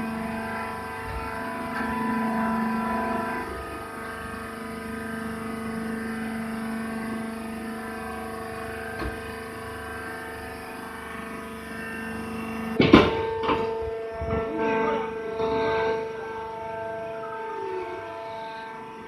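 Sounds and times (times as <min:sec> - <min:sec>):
baler pump motor hum: 0:00.0 - 0:19.0
small knocks: 0:12.8 - 0:14.5
loud metallic clank: 0:12.8 - 0:15.0.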